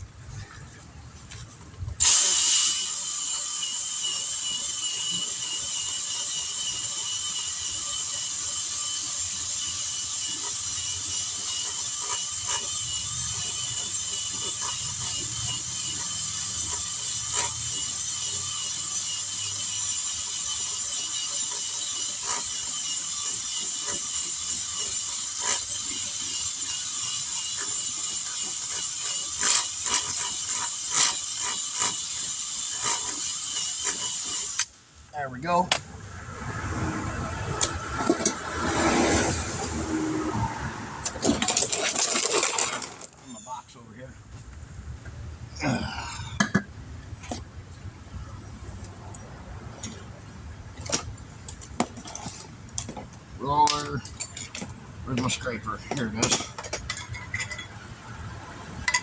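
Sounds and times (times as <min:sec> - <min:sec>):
rotary power tool whining: 0:02.0 - 0:35.0, 0:36.0 - 0:43.5.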